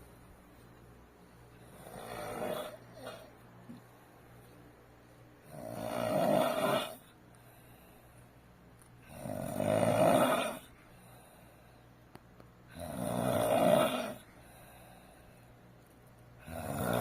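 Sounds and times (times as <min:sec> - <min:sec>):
loud snoring: 0:01.7 - 0:03.3, 0:05.4 - 0:07.1, 0:09.0 - 0:10.7, 0:12.7 - 0:14.3, 0:16.4 - 0:17.0.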